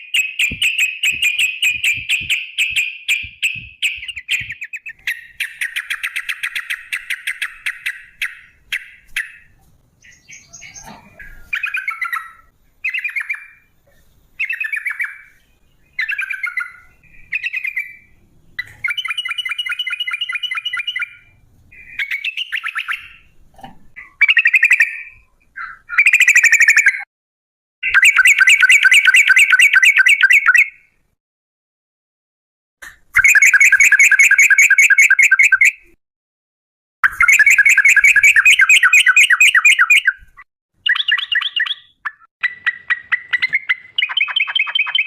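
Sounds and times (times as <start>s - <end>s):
bird song with rolling trills: 0.0s - 27.1s, 27.8s - 30.9s, 33.2s - 35.9s, 37.0s - 45.0s.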